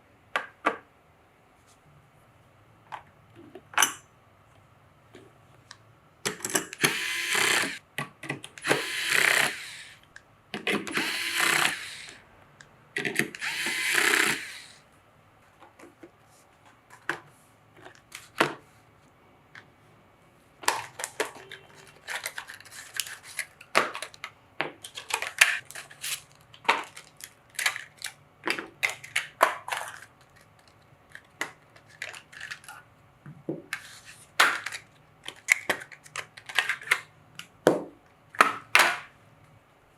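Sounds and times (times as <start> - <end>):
electric screwdriver running: 6.8 - 7.8, 8.6 - 10.0, 10.9 - 12.2, 13.4 - 14.8.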